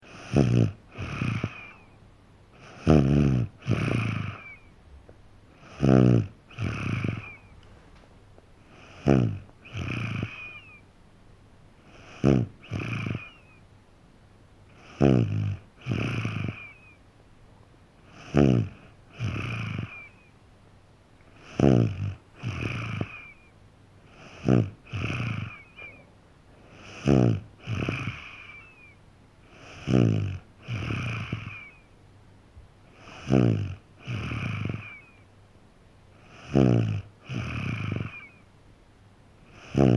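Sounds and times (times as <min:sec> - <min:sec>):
child snoring: 0:00.0 - 0:01.9, 0:02.6 - 0:04.7, 0:05.6 - 0:07.6, 0:08.6 - 0:10.8, 0:11.8 - 0:13.6, 0:14.7 - 0:17.0, 0:18.0 - 0:20.3, 0:21.3 - 0:23.5, 0:24.1 - 0:26.0, 0:26.6 - 0:31.9, 0:32.9 - 0:35.3, 0:36.2 - 0:38.4, 0:39.5 - 0:39.9.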